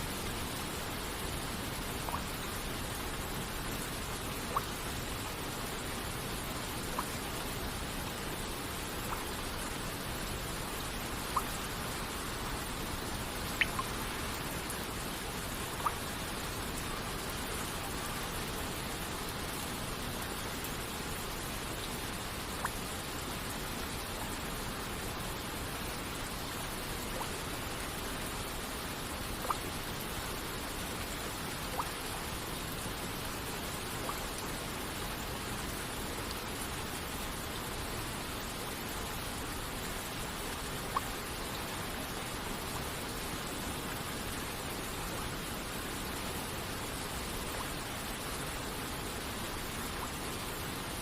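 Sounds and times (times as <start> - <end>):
water droplets plinking: 13.5 - 13.9.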